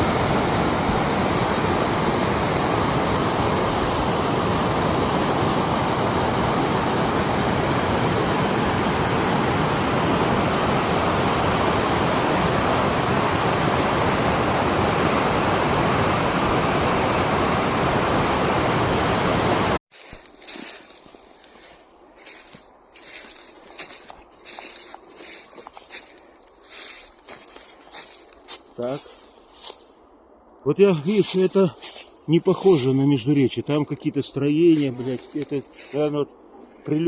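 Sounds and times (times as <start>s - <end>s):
waterfall rushing: 0.0s - 19.8s.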